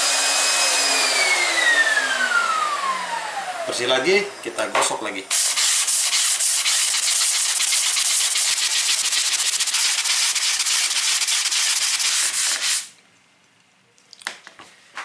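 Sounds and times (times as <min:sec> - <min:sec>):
metal scraping on sandpaper: 0:05.3 - 0:12.9.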